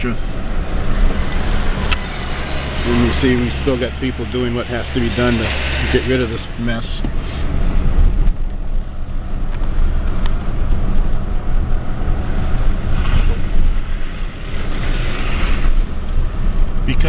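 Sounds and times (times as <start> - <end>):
truck engine and road rumble: 0.0 - 17.0
road hiss: 12.8 - 16.3.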